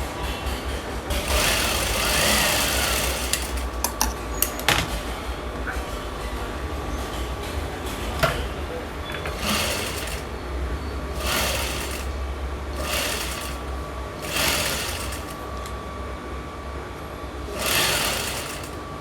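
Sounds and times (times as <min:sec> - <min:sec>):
steady low hum: 0:00.0 - 0:19.0
sewing machine stitching: 0:01.1 - 0:03.9, 0:09.3 - 0:10.4, 0:11.1 - 0:15.5, 0:17.4 - 0:18.9.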